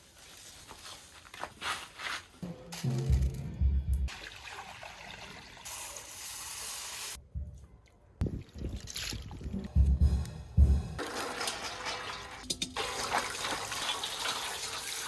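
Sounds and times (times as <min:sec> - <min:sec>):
water trickling and splashing: 0:04.1 - 0:06.2, 0:08.2 - 0:09.6, 0:11.0 - 0:15.0.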